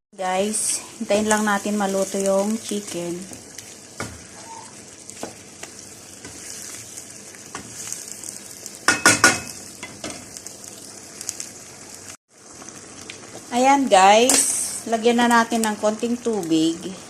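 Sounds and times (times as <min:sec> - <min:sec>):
chicken sizzling in oil: 0:00.2 - 0:17.0.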